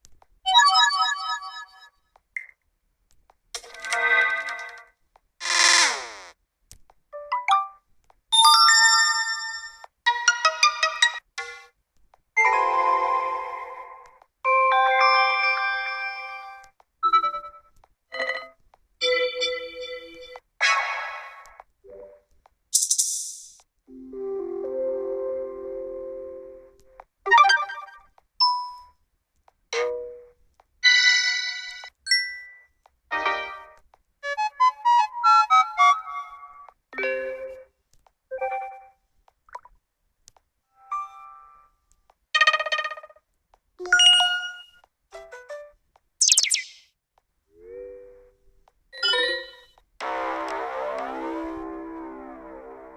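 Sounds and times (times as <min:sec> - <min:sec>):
smartphone alert tones: 0:46.2 - 0:46.8.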